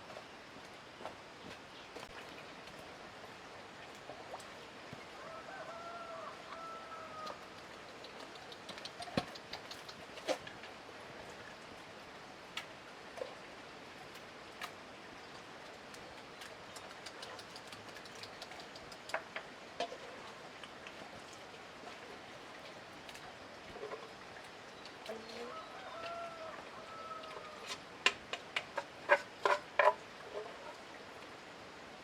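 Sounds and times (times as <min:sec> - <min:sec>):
light ticks: 0:07.2 - 0:10.5, 0:15.9 - 0:19.9, 0:20.6 - 0:21.1.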